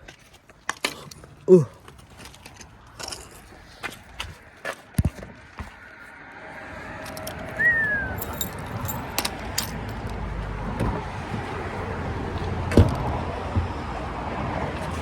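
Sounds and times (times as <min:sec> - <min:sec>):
short falling whistle: 0:07.6 - 0:08.2
light metallic jangling: 0:08.1 - 0:10.3.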